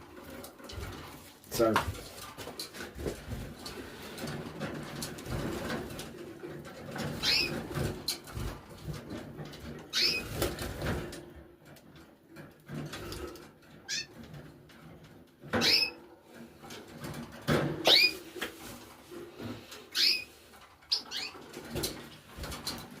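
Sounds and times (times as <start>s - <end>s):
rustling: 0.0s - 11.8s, 12.4s - 23.0s
canaries chirping: 6.9s - 7.9s, 9.9s - 10.5s, 13.9s - 14.2s, 15.5s - 16.0s, 17.8s - 18.3s, 19.8s - 20.3s, 20.9s - 21.9s.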